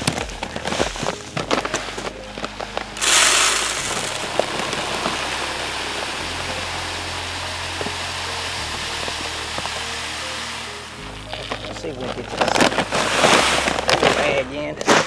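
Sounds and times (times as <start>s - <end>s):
seed pouring from a bag: 3.0s - 6.2s.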